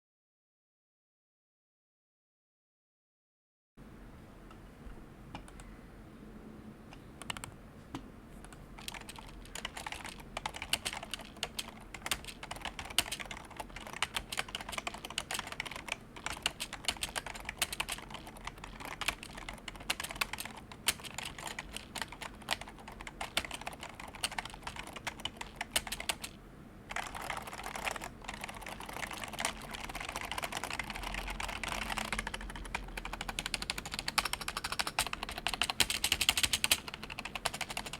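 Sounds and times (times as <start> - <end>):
keyboard typing: 6.9 - 7.6, 8.4 - 37.9.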